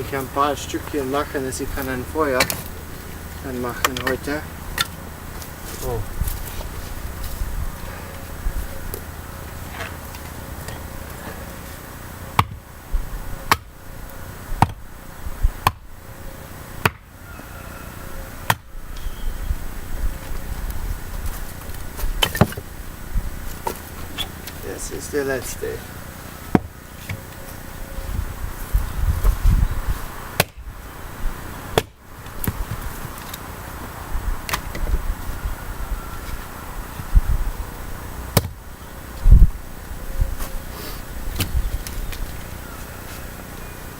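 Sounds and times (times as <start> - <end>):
low rumbling handling noise: 0.0 - 16.4, 18.1 - 43.8
axe chopping wood: 12.4 - 12.6, 13.5 - 13.7, 14.6 - 14.8, 16.8 - 17.1, 30.4 - 30.6, 38.4 - 38.6.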